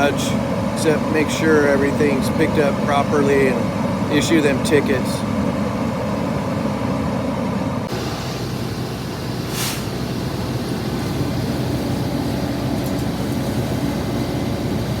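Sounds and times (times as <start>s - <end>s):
heavy vehicle engine rumbling: 0.0s - 15.0s
short hiss: 9.5s - 10.0s.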